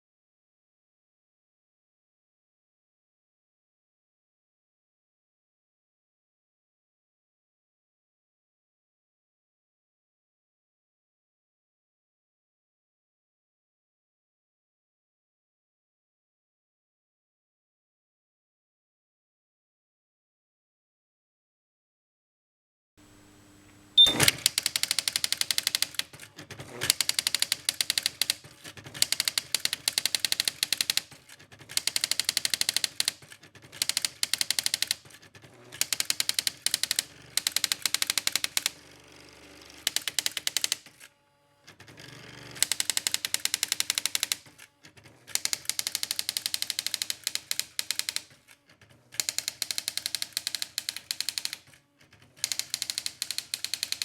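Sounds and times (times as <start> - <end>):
typewriter daisy wheel striking: 24.0 - 38.7, 39.8 - 40.9, 42.6 - 44.6, 45.4 - 48.5, 49.2 - 54.0.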